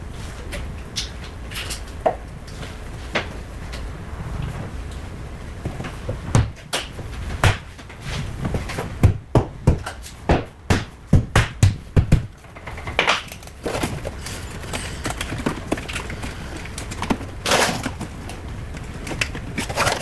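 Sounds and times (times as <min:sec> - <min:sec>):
sharp knocks and clicks: 0:06.3 - 0:14.0.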